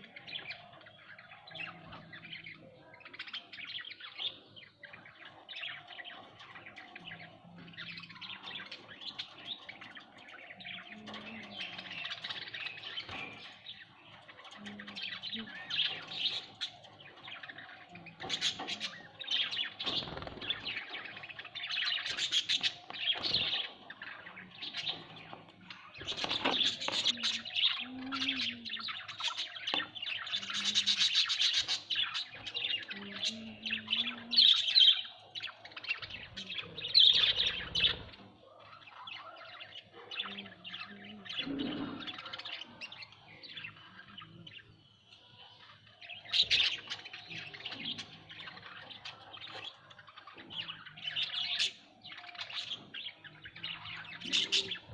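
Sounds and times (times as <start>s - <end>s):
budgerigars chirping: 14.6s - 54.9s.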